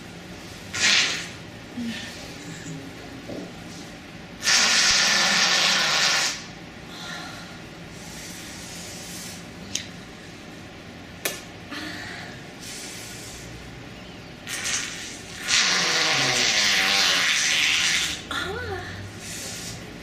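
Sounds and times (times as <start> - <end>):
airy hissing fart: 0.7 - 1.4, 4.4 - 6.6, 14.4 - 18.3.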